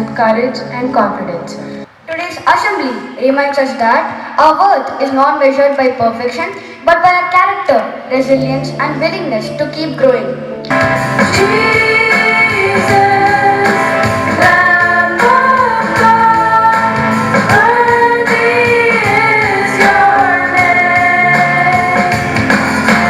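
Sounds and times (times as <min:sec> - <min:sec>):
guitar accompaniment: 0:08.3 - 0:23.0
woman singing: 0:11.2 - 0:22.3.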